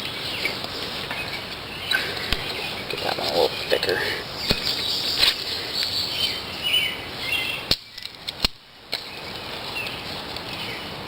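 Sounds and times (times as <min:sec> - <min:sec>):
dry sticks snapping: 0:01.9 - 0:03.8, 0:04.4 - 0:05.9, 0:07.7 - 0:09.2.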